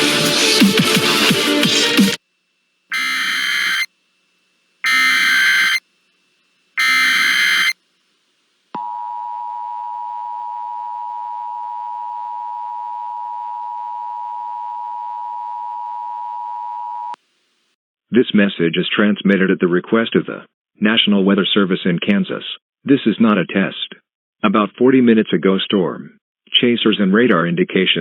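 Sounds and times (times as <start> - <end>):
digital header bursts: 2.9 - 3.9, 4.8 - 5.8, 6.8 - 7.8
two-tone attention signal: 2.9 - 3.9, 4.8 - 5.8, 6.8 - 7.8.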